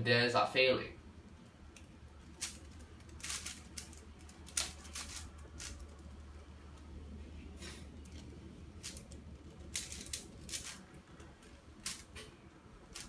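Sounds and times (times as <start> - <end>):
low steady hum: 0.0 - 13.0
plastic puzzle clicking: 1.7 - 6.2, 8.0 - 13.0.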